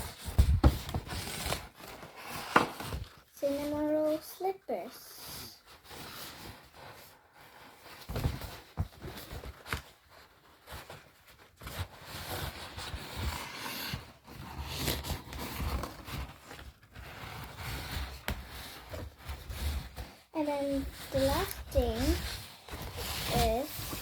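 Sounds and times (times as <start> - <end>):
packaging rustling and scraping: 0.0 - 24.0.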